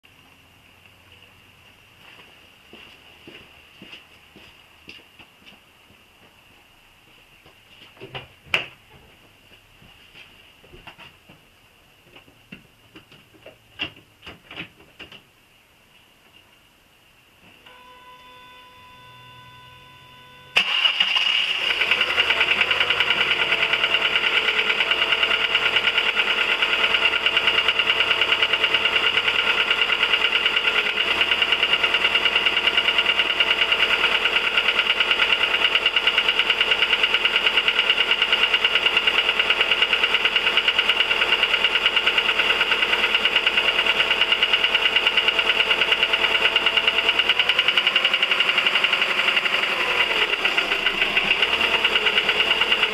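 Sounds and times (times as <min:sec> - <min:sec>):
car engine starting: 0:18.2 - 0:52.9
engine rapid ticking: 0:20.6 - 0:52.9.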